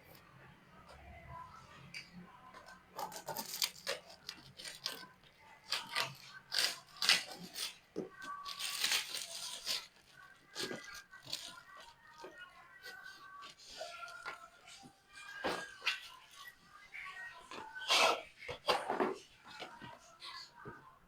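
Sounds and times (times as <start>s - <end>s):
packaging tearing and crinkling: 8.4s - 10.1s.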